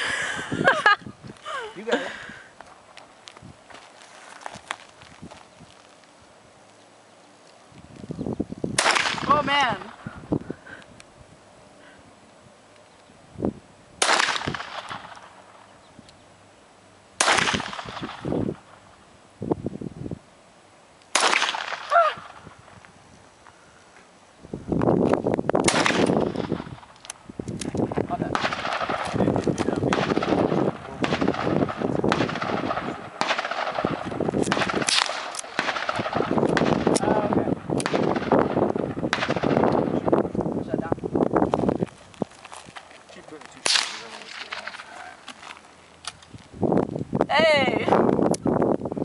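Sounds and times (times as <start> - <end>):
gunshots with echo: 28.3 - 29.2, 29.9 - 37.0, 37.8 - 39.6, 43.6 - 44.9.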